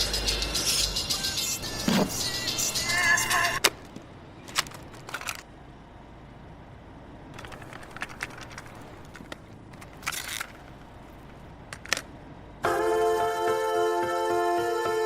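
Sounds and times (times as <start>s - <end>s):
low steady background noise: 3.5s - 14.8s.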